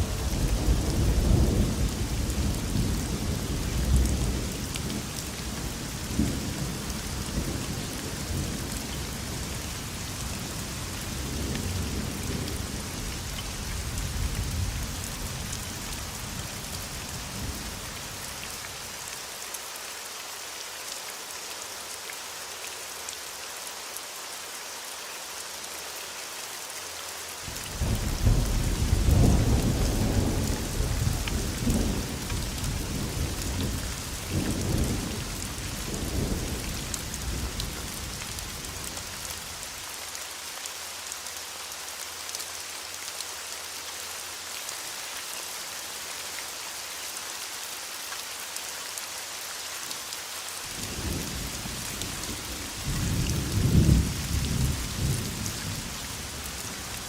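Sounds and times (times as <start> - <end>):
heavy rain hissing: 0.0 - 57.0
rolling thunder: 27.8 - 36.7.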